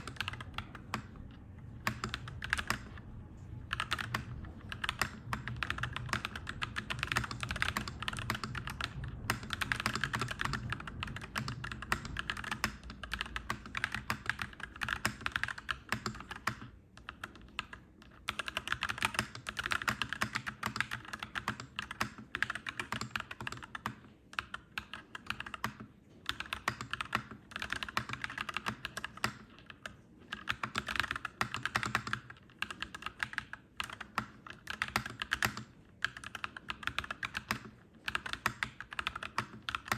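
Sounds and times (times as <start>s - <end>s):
low steady rumble: 0.0s - 13.8s
mechanical keyboard typing: 0.0s - 39.9s.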